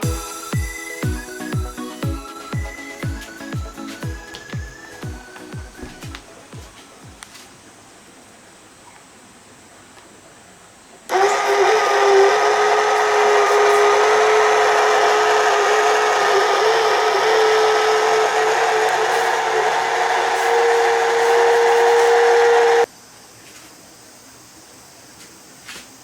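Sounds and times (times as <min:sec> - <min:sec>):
electric motor and pump whining: 0:00.0 - 0:06.2, 0:11.1 - 0:22.9.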